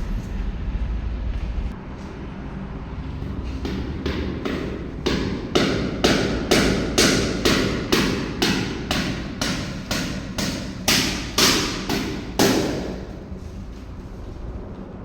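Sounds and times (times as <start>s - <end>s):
hammering: 3.4s - 13.4s.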